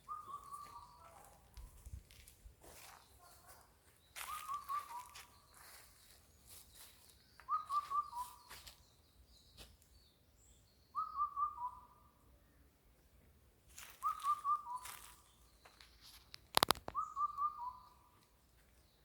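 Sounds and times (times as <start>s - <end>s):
bird whistling short phrase: 14.0s - 15.0s.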